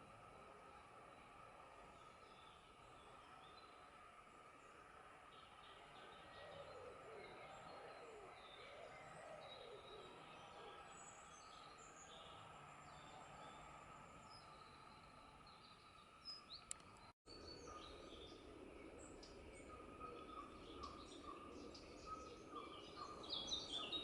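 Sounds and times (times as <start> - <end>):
small birds chirping: 0.3 - 24.0
light clicks: 16.6 - 17.1.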